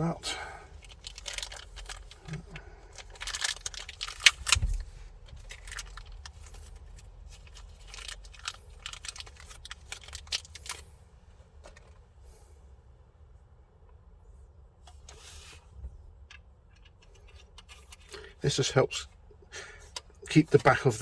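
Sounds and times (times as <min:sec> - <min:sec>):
plastic clicks and rustles: 0:00.7 - 0:10.9, 0:16.2 - 0:18.4, 0:19.9 - 0:21.0.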